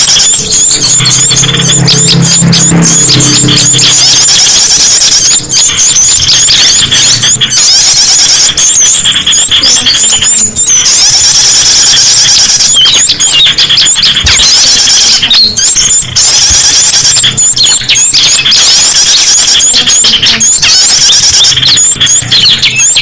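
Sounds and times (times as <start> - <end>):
songbirds chirping and twittering: 0.0 - 11.8.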